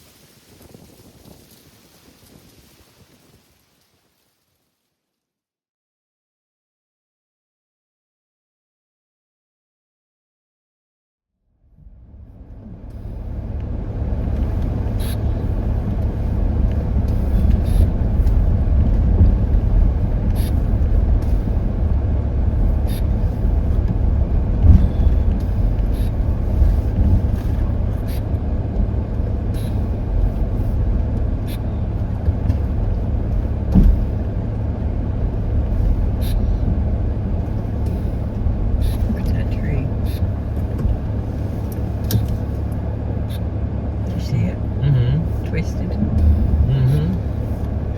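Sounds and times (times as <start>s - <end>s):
car interior road noise: 11.8s - 47.9s.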